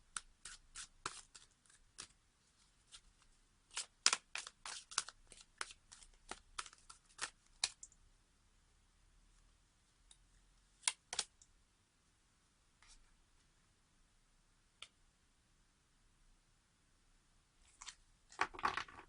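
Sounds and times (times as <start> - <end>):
cards snapping and clicking: 3.7 - 7.9, 10.8 - 11.4.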